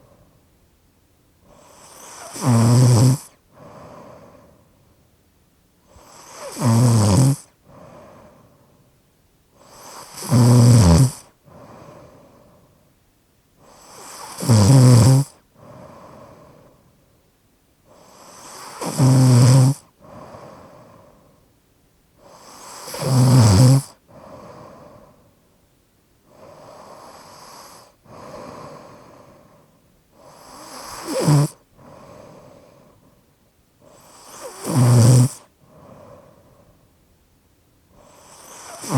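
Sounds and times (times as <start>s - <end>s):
soft breaths: 0.0s - 0.7s, 3.2s - 5.1s, 7.4s - 10.3s, 11.2s - 14.5s, 15.3s - 19.2s, 19.8s - 23.3s, 23.9s - 37.2s, 37.9s - 38.9s
person snoring: 1.5s - 4.5s, 5.9s - 8.5s, 9.6s - 12.5s, 13.6s - 16.7s, 18.0s - 21.2s, 22.2s - 25.2s, 26.3s - 29.6s, 30.2s - 32.9s, 33.8s - 36.4s, 38.0s - 38.9s.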